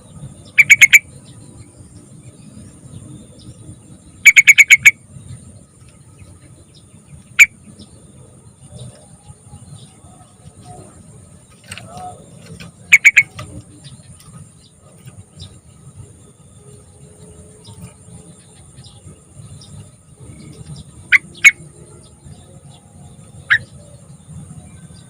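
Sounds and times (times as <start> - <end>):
bird calling sharp notes: 0.6 - 1.1, 4.2 - 5.0, 11.6 - 13.7.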